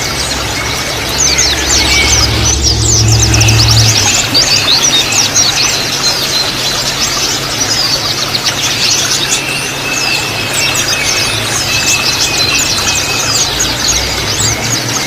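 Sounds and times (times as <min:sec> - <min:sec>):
low hum: 0:00.0 - 0:06.7
birds twittering: 0:00.0 - 0:15.0
thin steady whistle: 0:00.4 - 0:05.8, 0:09.1 - 0:15.0.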